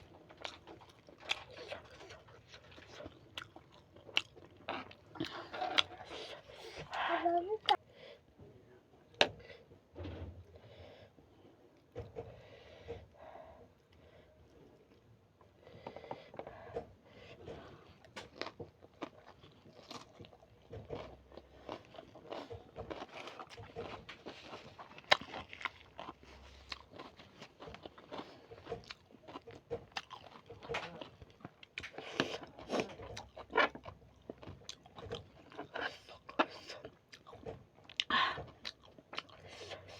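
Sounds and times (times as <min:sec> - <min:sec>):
person chewing food: 0:00.0 - 0:07.8, 0:13.8 - 0:39.9.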